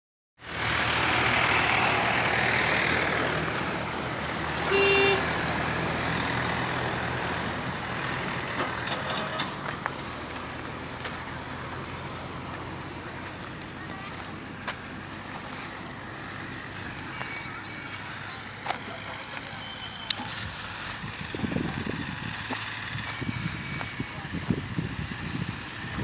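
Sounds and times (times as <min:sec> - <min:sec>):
short horn-like tone: 0:04.7 - 0:05.3.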